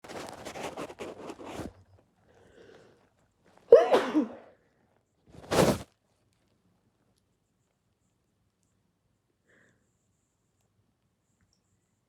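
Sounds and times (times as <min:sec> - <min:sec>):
person sneezing: 0:03.7 - 0:04.5.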